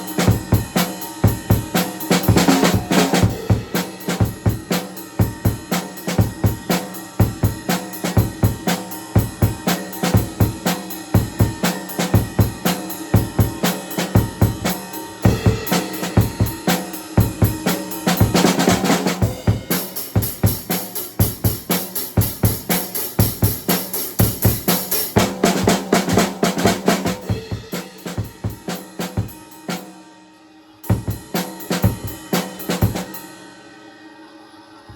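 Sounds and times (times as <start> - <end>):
ringing cymbals: 0.0 - 25.2
drum fill: 0.0 - 29.9
rock drum beat: 0.0 - 30.0, 30.8 - 33.3.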